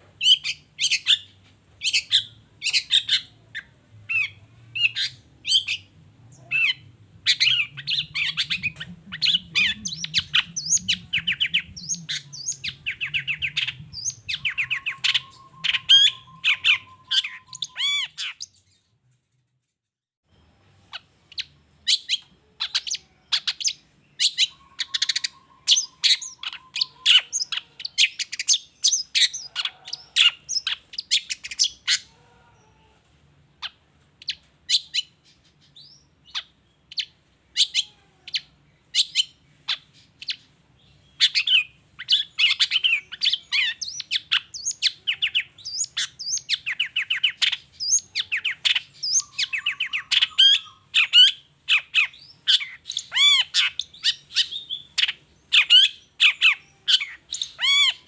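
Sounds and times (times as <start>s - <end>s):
shrike chirping: 4.1s - 18.6s.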